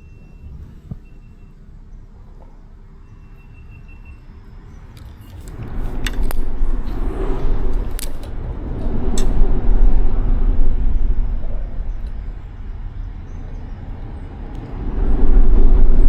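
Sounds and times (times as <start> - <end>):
traffic rumble on bridge: 0.0 - 16.0.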